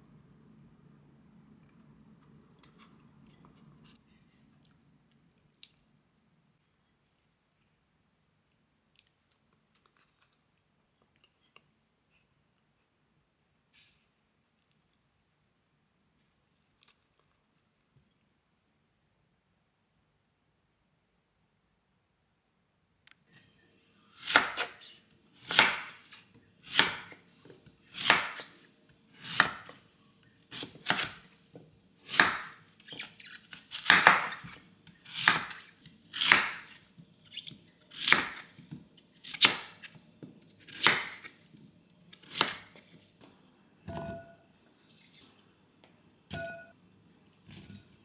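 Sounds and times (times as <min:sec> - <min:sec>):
knife slicing on cutting board: 0:24.2 - 0:24.8, 0:25.4 - 0:27.2, 0:27.9 - 0:28.6, 0:29.2 - 0:29.8, 0:30.5 - 0:31.3, 0:32.0 - 0:36.8.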